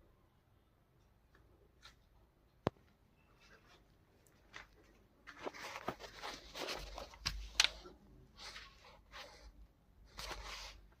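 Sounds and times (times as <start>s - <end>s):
plastic pipe scraping and rustling: 4.5s - 9.5s.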